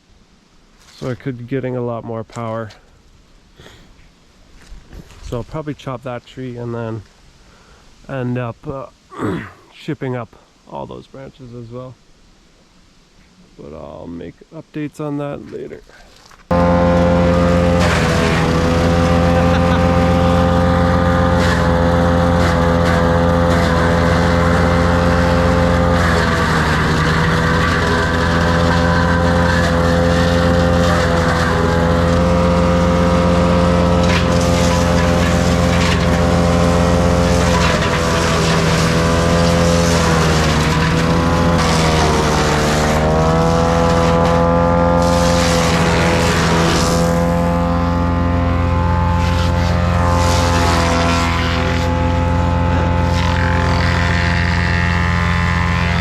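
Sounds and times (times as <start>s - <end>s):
wood chipper engine running: 16.5s - 56.0s
wood crackling and crunching: 17.7s - 52.3s, 52.9s - 56.0s.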